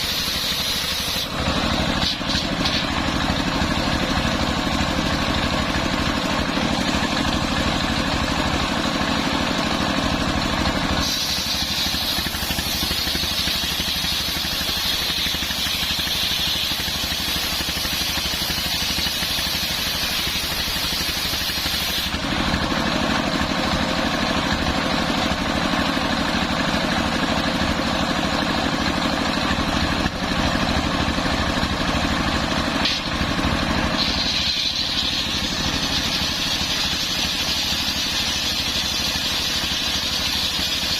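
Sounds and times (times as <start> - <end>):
circular sawmill engine running: 0.0 - 40.9
saw blade cutting log: 0.0 - 40.9.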